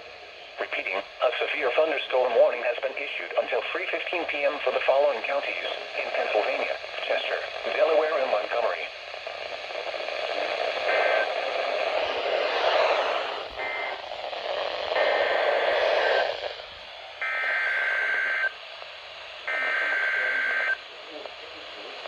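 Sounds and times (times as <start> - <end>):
radio hiss and static: 0.0 - 22.0
two-tone data bursts: 10.8 - 11.4, 13.6 - 14.0, 17.2 - 18.6, 19.5 - 20.8.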